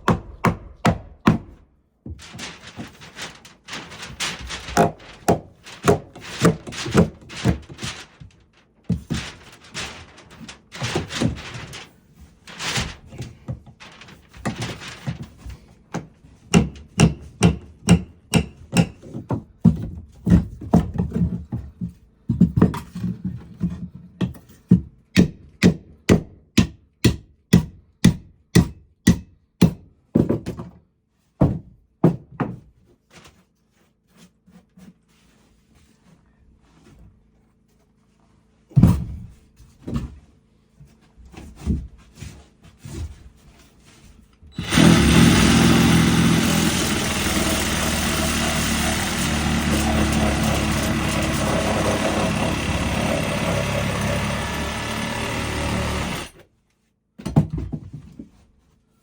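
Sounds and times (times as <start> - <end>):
hammer driving nails into wood: 0.0 - 1.6, 16.5 - 19.3, 25.1 - 29.9, 44.6 - 56.4.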